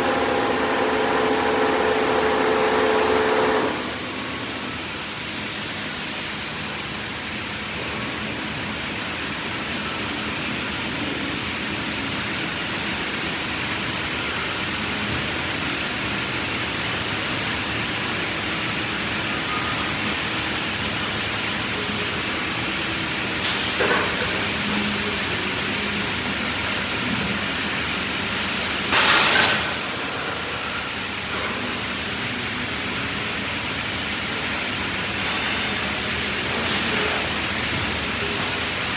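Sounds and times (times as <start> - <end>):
panel saw running: 0.0 - 4.6.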